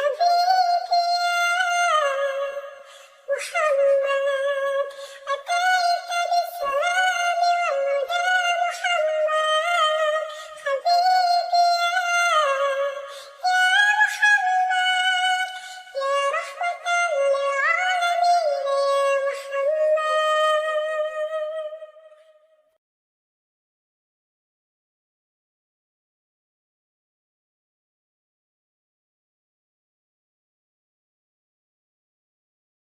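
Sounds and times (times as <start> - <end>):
high-pitched singing voice: 0.0 - 22.4.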